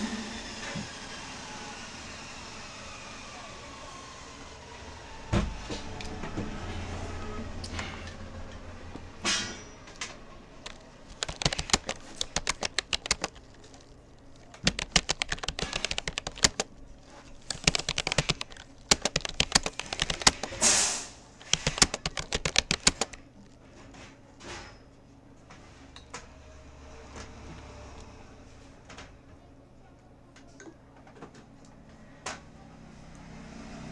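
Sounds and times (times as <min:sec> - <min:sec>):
keyboard typing: 0:09.8 - 0:23.3.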